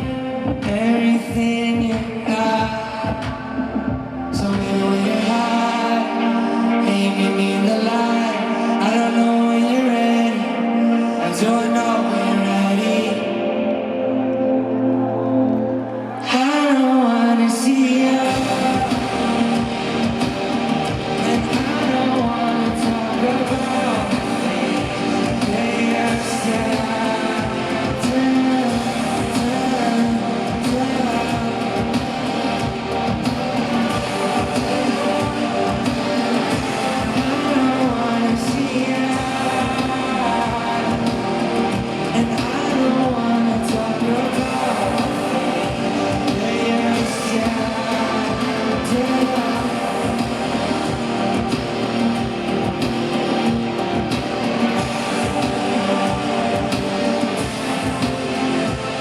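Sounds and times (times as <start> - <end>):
steady drum beat: 0.0 - 5.7, 18.2 - 59.0
electric guitar: 0.0 - 59.0
live band music: 0.0 - 59.0.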